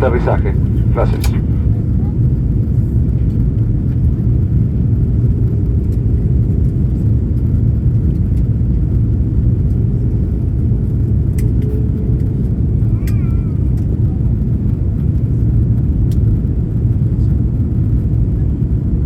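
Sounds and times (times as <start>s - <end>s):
airplane cabin rumble: 0.0s - 19.0s.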